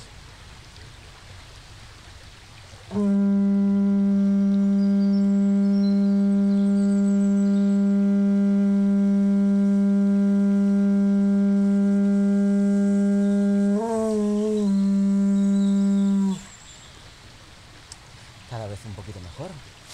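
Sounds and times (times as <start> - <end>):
conch shell trumpet low note: 2.9 - 16.5.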